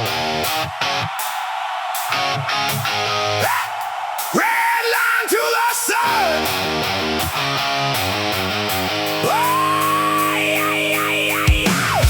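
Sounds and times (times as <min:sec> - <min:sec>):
bass: 0:00.0 - 0:00.7, 0:06.3 - 0:12.0
strummed electric guitar: 0:00.0 - 0:01.2, 0:02.1 - 0:03.5, 0:06.0 - 0:12.0.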